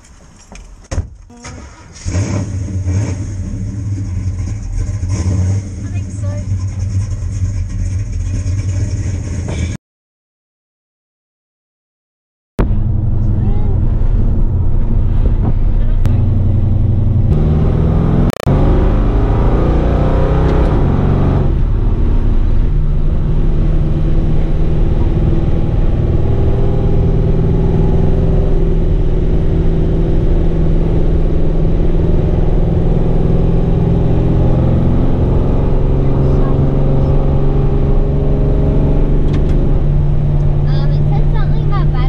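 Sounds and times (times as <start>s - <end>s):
car engine accelerating: 1.3s - 9.8s, 12.6s - 42.0s.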